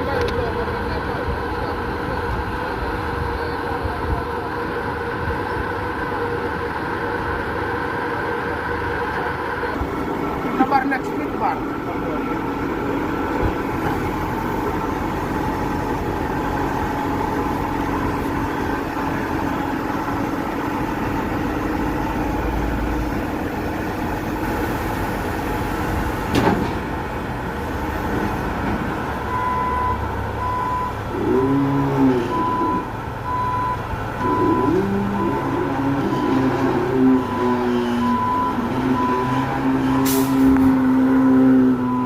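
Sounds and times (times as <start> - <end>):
truck engine running: 0.0 - 42.0
reversing alarm beeping: 16.8 - 18.8, 29.3 - 39.5.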